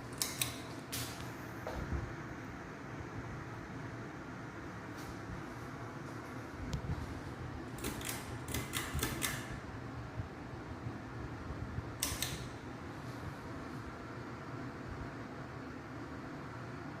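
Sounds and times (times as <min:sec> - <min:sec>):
ceiling fan humming: 0:00.0 - 0:17.0
quick clicks: 0:00.1 - 0:01.2, 0:07.8 - 0:09.5, 0:12.0 - 0:12.5.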